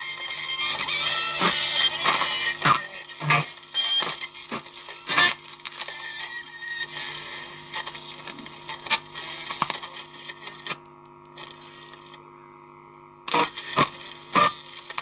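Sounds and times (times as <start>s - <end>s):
electrical hum and hiss: 0.0s - 15.0s
record player clicks and knocks: 9.5s - 9.8s.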